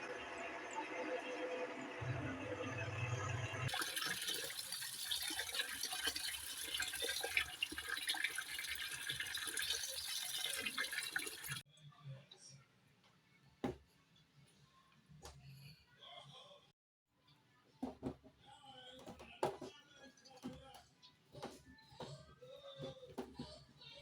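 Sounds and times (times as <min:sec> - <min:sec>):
running water splashing: 0:01.7 - 0:11.6.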